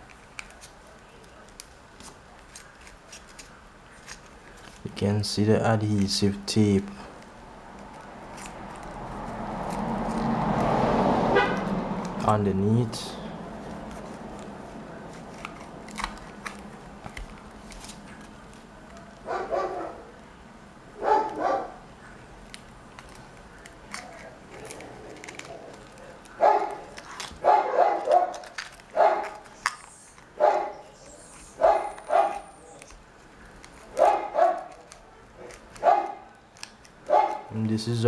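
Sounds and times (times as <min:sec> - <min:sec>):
dog barking: 0:19.2 - 0:20.1, 0:21.0 - 0:21.8, 0:26.4 - 0:29.5, 0:30.4 - 0:32.8, 0:33.9 - 0:36.4, 0:37.0 - 0:37.6.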